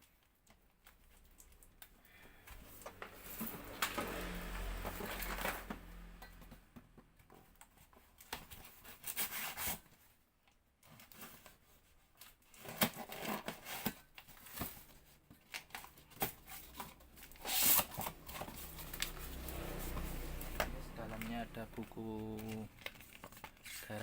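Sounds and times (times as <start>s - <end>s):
packaging tearing and rustling: 10.8s - 24.0s.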